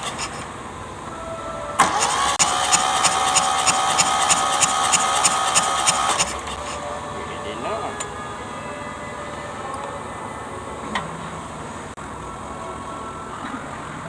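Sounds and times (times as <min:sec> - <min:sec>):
electric starter cranking engine: 0:00.0 - 0:01.0, 0:01.8 - 0:06.9.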